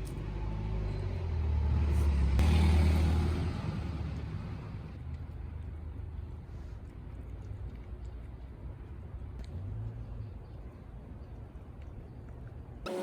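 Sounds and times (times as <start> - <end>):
motor vehicle passing by: 0.2 - 5.0.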